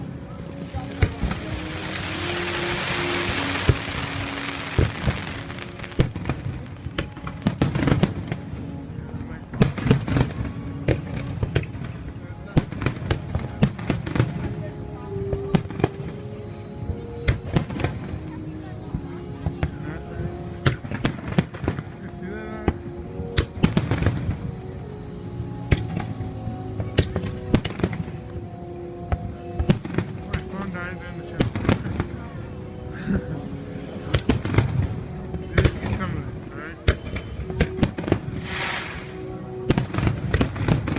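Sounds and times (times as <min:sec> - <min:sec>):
fireworks crackling: 0:00.0 - 0:18.4, 0:19.0 - 0:24.8, 0:25.7 - 0:28.4, 0:29.2 - 0:32.6, 0:33.2 - 0:40.9
music playing: 0:00.0 - 0:40.9
fireworks booming: 0:00.6 - 0:08.5, 0:36.9 - 0:40.9.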